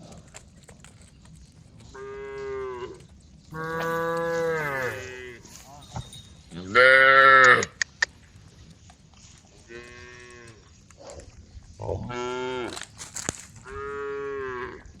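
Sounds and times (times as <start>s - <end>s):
cows mooing: 1.9s - 5.5s.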